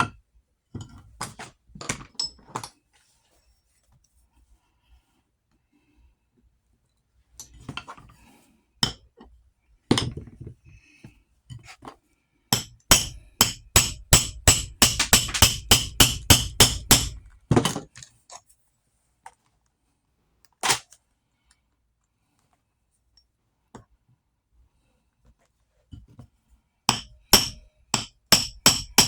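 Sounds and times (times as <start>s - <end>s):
hammer striking on workbench: 12.6s - 17.3s, 26.9s - 29.0s.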